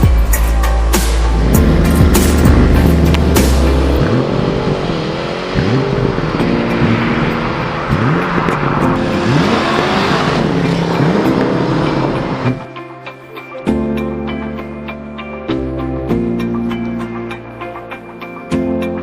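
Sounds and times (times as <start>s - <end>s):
background music: 0.0s - 19.0s
car engine revving: 1.0s - 12.7s.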